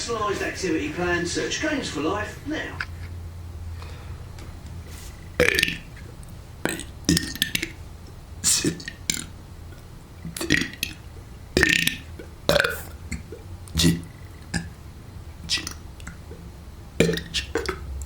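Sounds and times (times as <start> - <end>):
person belching: 5.4 - 7.8, 8.4 - 9.4, 10.2 - 14.8, 15.5 - 16.4, 17.0 - 17.9.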